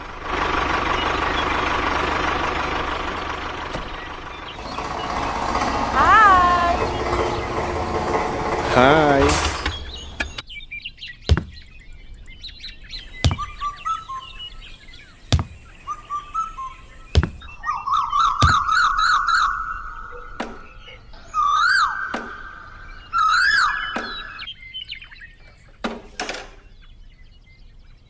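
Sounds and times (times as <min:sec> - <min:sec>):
birds chirping and calling: 0:03.1 - 0:28.0
sharp knocks: 0:04.6 - 0:10.4, 0:11.3 - 0:11.6, 0:13.2 - 0:13.6, 0:15.3 - 0:15.6, 0:17.2 - 0:17.5.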